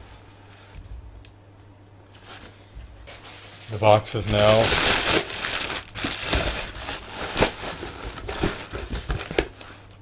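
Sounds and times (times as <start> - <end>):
bubble wrap crinkling: 2.2 - 10.0.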